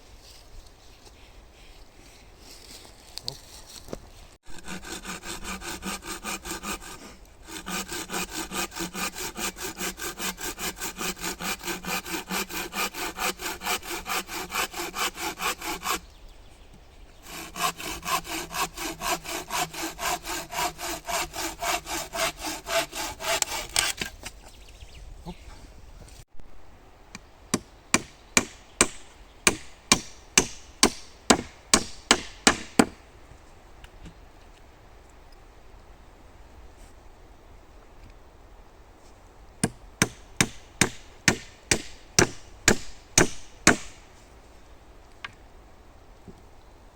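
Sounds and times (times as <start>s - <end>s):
hand saw cutting wood: 4.5s - 16.0s, 17.2s - 24.2s, 27.9s - 33.0s, 39.6s - 44.1s.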